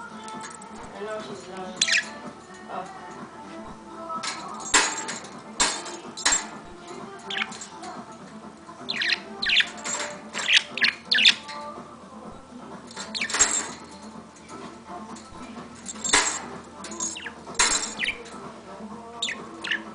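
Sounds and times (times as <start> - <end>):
bird chirps and squawks: 1.8 - 2.2, 8.9 - 9.8, 10.4 - 11.5.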